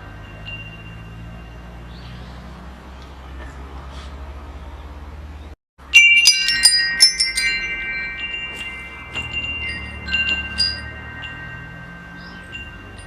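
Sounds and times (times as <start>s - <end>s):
wind chimes ringing: 0.0s - 2.7s, 5.8s - 13.0s.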